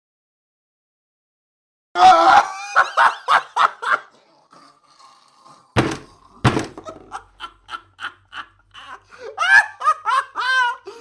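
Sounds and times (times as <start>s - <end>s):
person laughing: 2.0s - 4.1s, 6.8s - 11.0s
heavy thuds: 5.8s - 6.9s.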